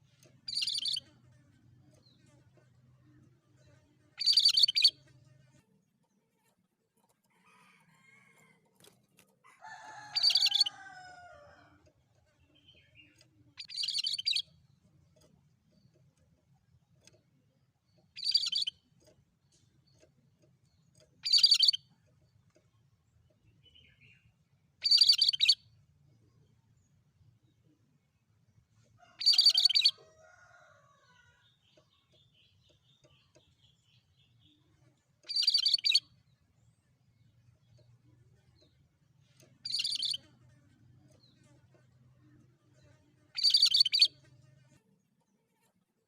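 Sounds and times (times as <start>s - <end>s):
bird chattering song: 0.5s - 1.1s, 4.2s - 5.0s, 10.2s - 10.8s, 12.4s - 14.7s, 17.8s - 18.9s, 20.7s - 21.9s, 23.5s - 25.7s, 29.2s - 30.0s, 31.4s - 36.4s, 39.6s - 40.3s, 43.4s - 44.2s.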